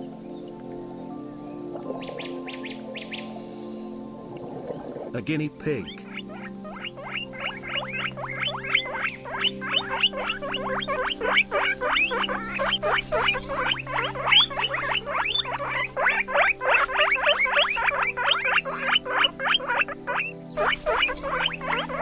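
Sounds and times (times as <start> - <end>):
guinea pig squeaking: 6.0 - 22.0.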